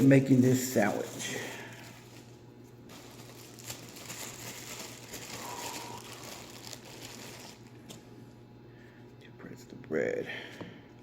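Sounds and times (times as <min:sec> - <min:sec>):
plastic packaging crinkling: 0:00.0 - 0:08.2.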